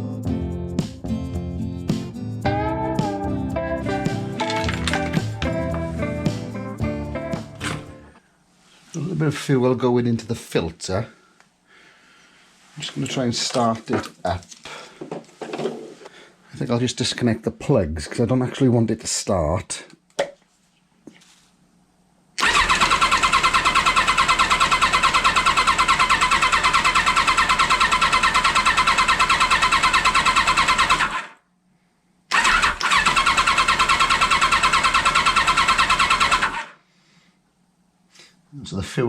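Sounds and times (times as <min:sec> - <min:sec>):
motorcycle engine cranking: 0:04.4 - 0:05.8, 0:22.4 - 0:31.3, 0:32.3 - 0:36.7.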